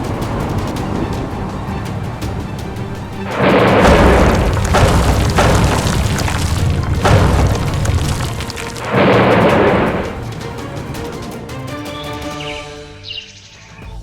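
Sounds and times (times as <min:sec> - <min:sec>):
music with heavy booming: 0:03.2 - 0:11.0.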